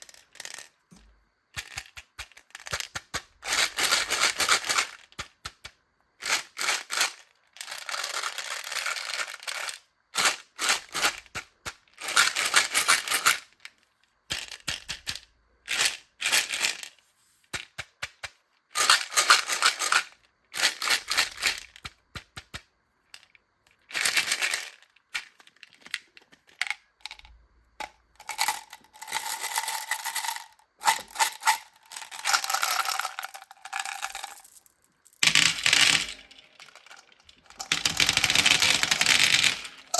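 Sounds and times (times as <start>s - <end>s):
micro beads pouring and rattling: 28.2s - 39.9s
sharp clicks of beads landing: 28.2s - 39.9s.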